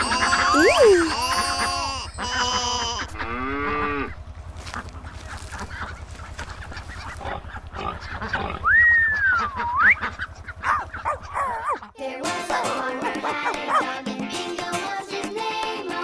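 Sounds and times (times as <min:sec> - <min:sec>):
honking animal calls: 0:00.0 - 0:12.0.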